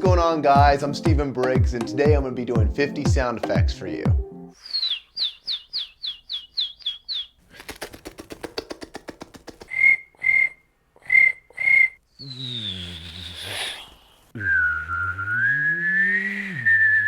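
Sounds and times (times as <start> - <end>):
hissing falling whistle: 4.6 - 7.3, 9.7 - 17.0
mouth-made bird chirps: 4.6 - 8.0, 8.6 - 14.4
mouth clicks imitating wings flapping: 4.9 - 12.0
mouth-made cricket chirps: 9.7 - 13.6.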